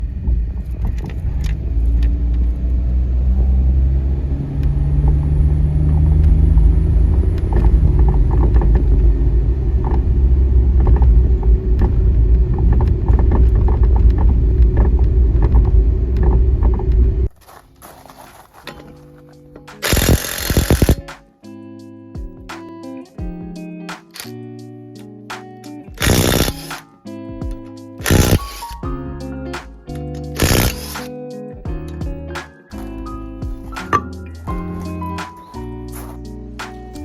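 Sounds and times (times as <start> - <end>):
vehicle engine and road rumble: 0.0 - 19.1.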